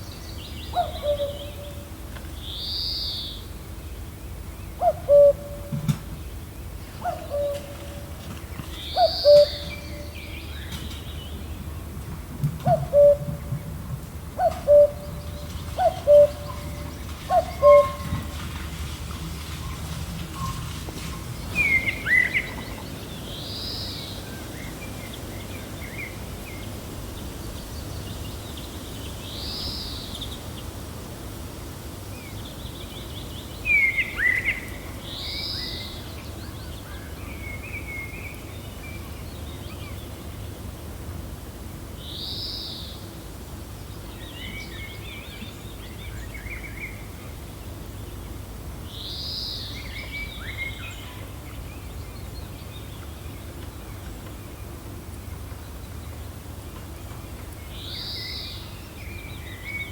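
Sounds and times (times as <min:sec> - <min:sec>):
gentle wind rumble: 0:00.0 - 0:59.9.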